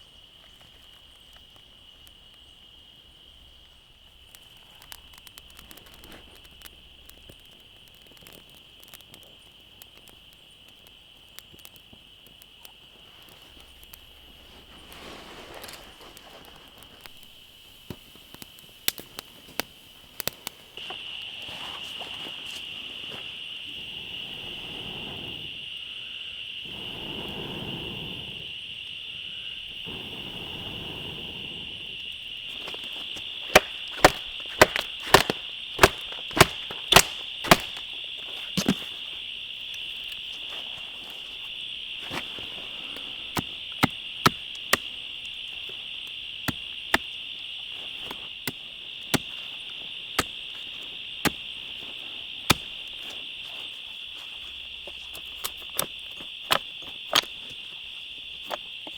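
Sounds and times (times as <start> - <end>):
insects chirring: 0.0 - 58.9
sharp irregular snaps and clicks: 0.3 - 21.3, 31.9 - 58.9
soft rustling: 12.8 - 17.3, 32.4 - 43.7.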